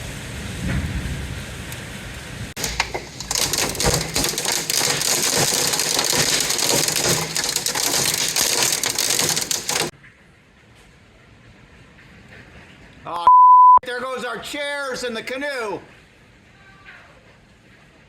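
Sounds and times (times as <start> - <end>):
hail clattering: 2.6 - 10.0.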